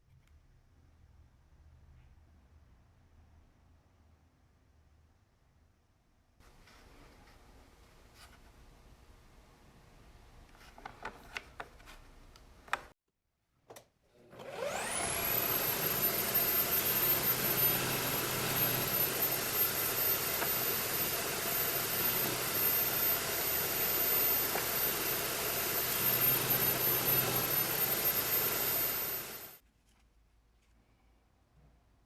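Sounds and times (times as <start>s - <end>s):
disc sander motor whine: 14.4s - 29.6s.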